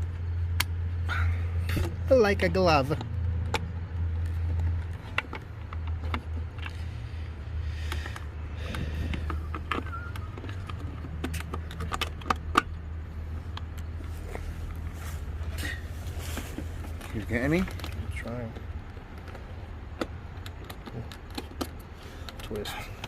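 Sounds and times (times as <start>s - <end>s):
steady low hum: 0.0s - 23.0s
clicks and knocks of plastic parts: 1.6s - 23.0s.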